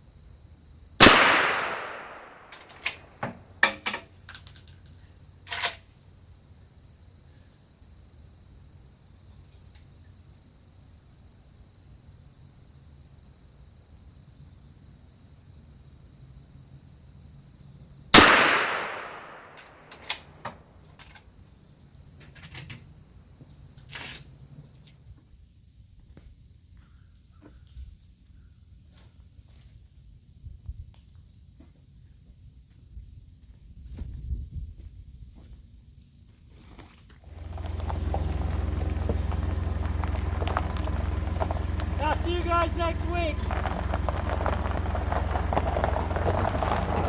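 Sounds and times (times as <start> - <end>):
rifle shot: 1.0 - 2.5, 18.2 - 19.7.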